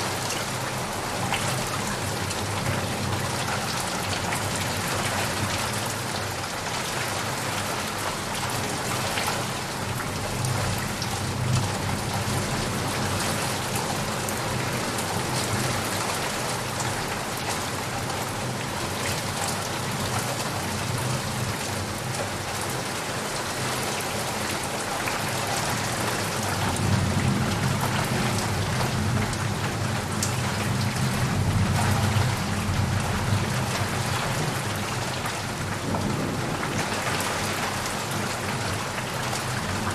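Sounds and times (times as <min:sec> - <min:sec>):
heavy rain falling: 0:00.0 - 0:39.9
thunder rumbling: 0:35.6 - 0:38.8.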